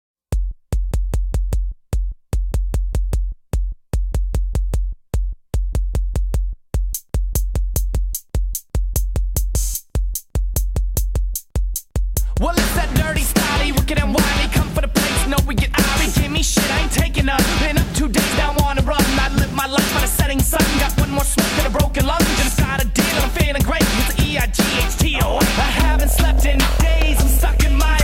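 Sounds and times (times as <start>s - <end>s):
drum machine ticks: 0.3s - 28.0s
song music: 12.4s - 18.4s, 20.7s - 28.0s
deep bass pulses: 25.1s - 28.0s.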